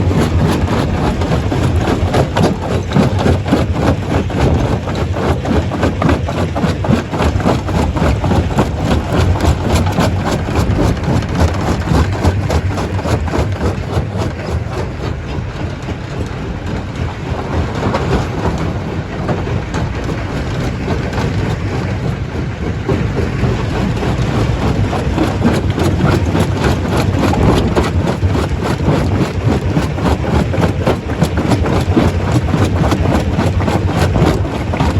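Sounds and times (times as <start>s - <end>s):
stone crusher running: 0.0s - 34.9s.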